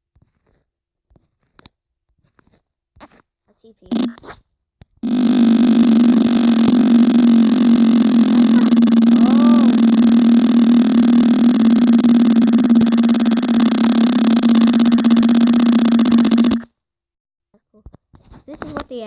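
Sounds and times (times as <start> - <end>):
electronic whirring hum: 3.9 - 4.2, 5.0 - 16.7.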